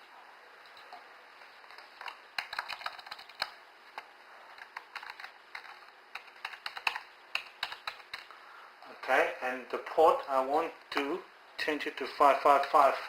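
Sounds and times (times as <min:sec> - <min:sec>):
typing on computer keyboard: 0:01.7 - 0:03.6, 0:04.5 - 0:08.3.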